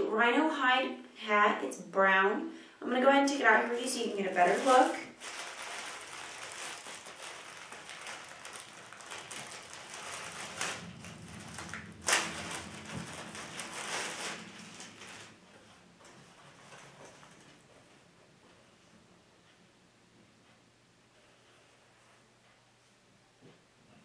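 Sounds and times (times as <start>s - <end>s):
packaging rustling and crinkling: 3.8s - 17.6s.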